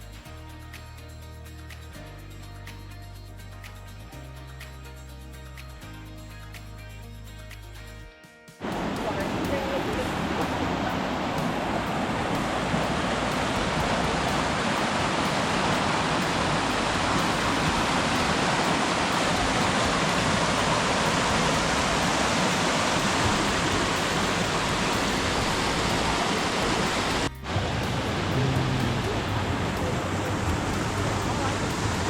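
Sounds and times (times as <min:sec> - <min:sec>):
rushing water: 0:08.6 - 0:32.0.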